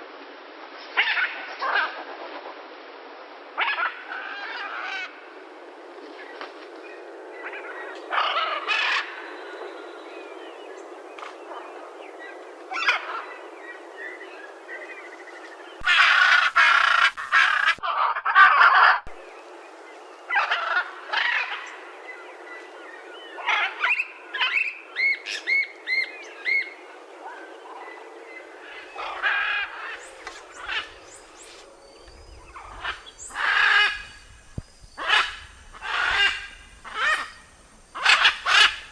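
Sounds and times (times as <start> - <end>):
macaws squawking: 15.8 - 19.2, 28.6 - 31.3, 32.5 - 34.2, 35.0 - 37.4, 38.0 - 38.9.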